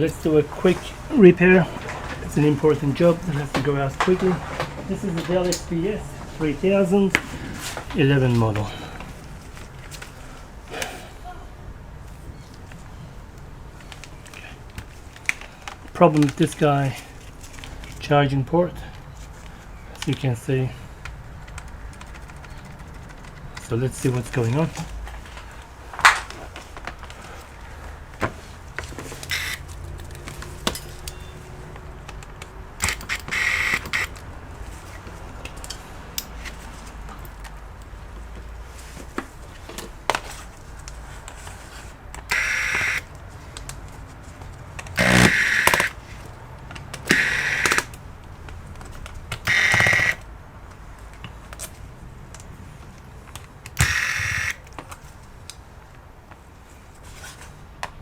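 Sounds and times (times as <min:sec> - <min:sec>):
handling clicks and knocks: 0:00.0 - 0:10.2, 0:21.0 - 0:27.3, 0:28.1 - 0:54.0
electric screwdriver whirring: 0:29.2 - 0:29.6, 0:32.8 - 0:34.2, 0:42.2 - 0:43.1, 0:45.0 - 0:46.0, 0:47.0 - 0:48.0, 0:49.4 - 0:50.3, 0:53.7 - 0:54.7.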